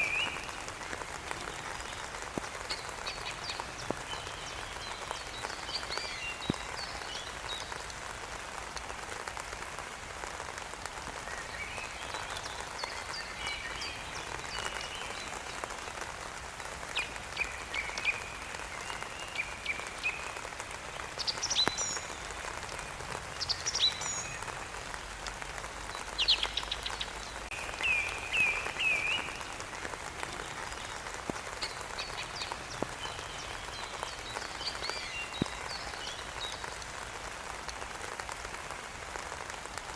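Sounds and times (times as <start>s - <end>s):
steady rain: 0.0s - 39.9s.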